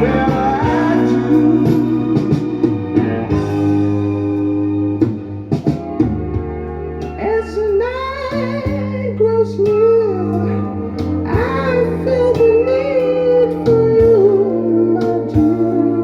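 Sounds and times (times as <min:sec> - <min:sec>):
person singing: 0:00.0 - 0:03.6, 0:11.3 - 0:16.0
guitar: 0:00.0 - 0:16.0
sustained bass notes: 0:00.0 - 0:16.0.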